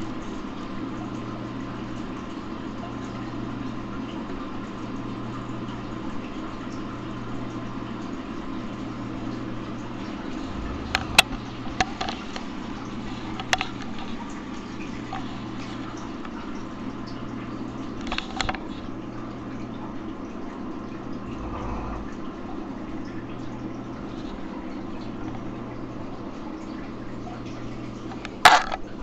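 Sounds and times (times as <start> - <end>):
man snoring: 21.2 - 22.2.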